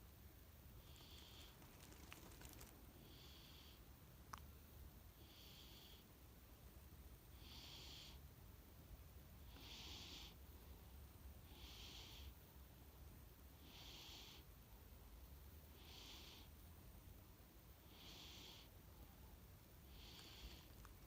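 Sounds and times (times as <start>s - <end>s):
cat snoring faintly: 0.8s - 3.9s, 5.1s - 6.1s, 7.3s - 8.3s, 9.4s - 10.5s, 11.4s - 12.4s, 13.5s - 14.6s, 15.6s - 16.6s, 17.8s - 18.9s, 19.8s - 21.0s.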